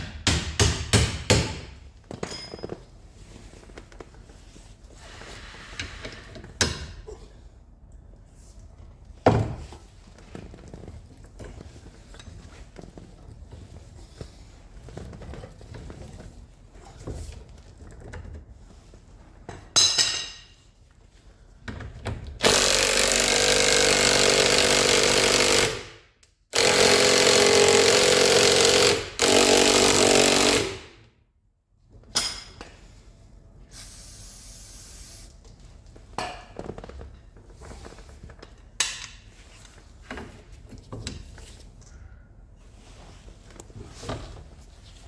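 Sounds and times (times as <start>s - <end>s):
impact wrench bursts: 22.4s - 31.0s.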